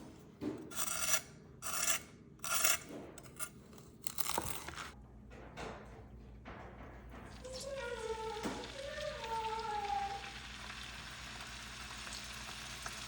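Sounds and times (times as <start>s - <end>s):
rasping strokes: 0.7s - 5.0s.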